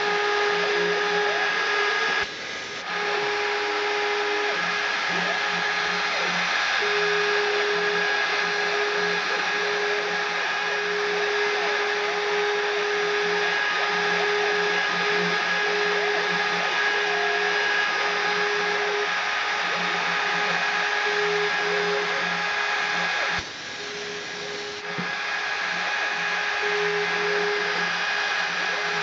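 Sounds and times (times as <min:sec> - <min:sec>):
milling machine motor whine: 0:00.0 - 0:29.0.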